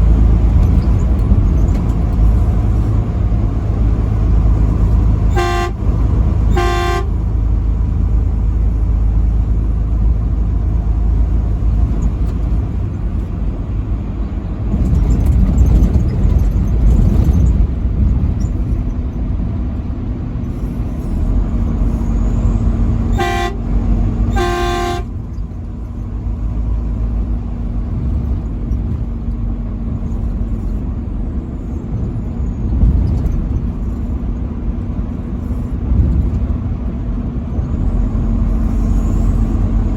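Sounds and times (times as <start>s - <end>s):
low rumble of engine and road: 0.0s - 39.9s
truck horn blasts: 5.2s - 7.5s, 22.0s - 25.4s.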